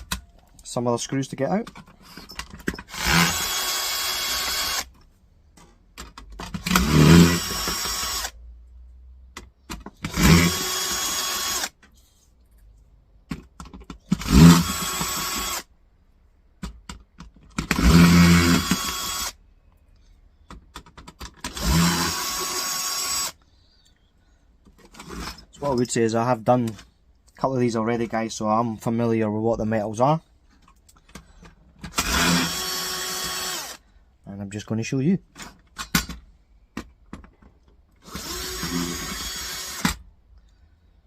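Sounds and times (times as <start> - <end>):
power drill motor running: 2.8 - 4.9, 6.6 - 8.4, 10.0 - 11.7, 14.1 - 15.7, 17.6 - 19.4, 21.5 - 23.4, 31.9 - 33.8, 38.0 - 40.0.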